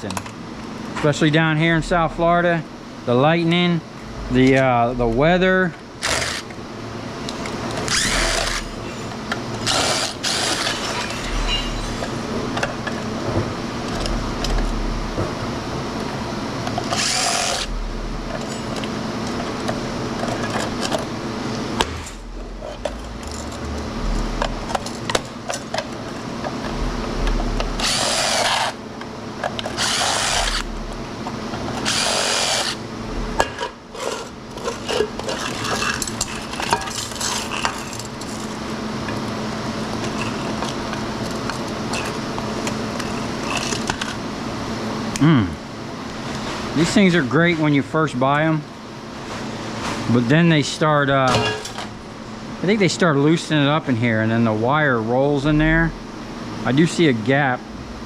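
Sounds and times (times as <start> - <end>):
background hum: 0.0 - 58.0
power drill running: 6.0 - 6.5, 7.8 - 12.1, 16.8 - 17.8, 27.7 - 28.8, 29.6 - 30.8, 31.7 - 32.8.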